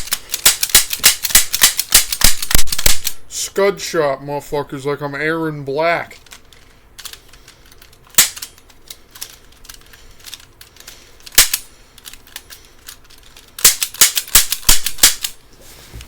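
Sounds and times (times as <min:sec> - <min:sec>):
handgun shots: 0:11.4 - 0:11.7, 0:13.6 - 0:15.3.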